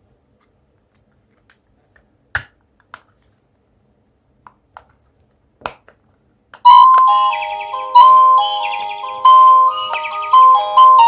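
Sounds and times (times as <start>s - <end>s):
electronic doorbell chime melody: 6.7s - 11.0s.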